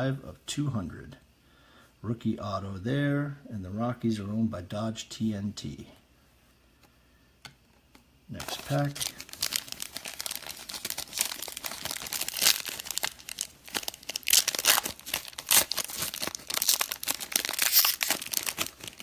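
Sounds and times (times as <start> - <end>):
wrapper crinkling and tearing: 8.4 - 19.0.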